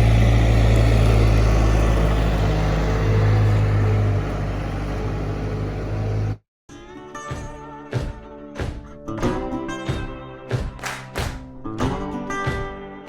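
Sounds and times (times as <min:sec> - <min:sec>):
vehicle engine droning: 0:00.0 - 0:06.4.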